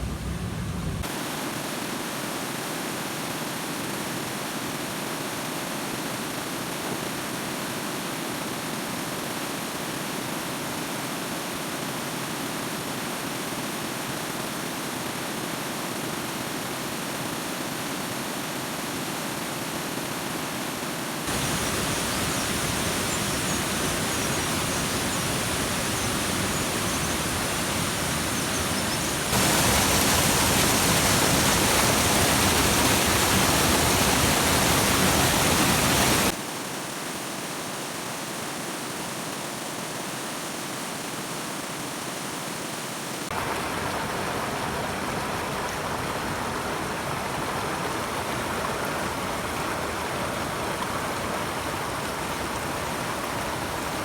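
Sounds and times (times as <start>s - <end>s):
flowing water rushing: 21.0s - 36.4s, 42.8s - 54.0s.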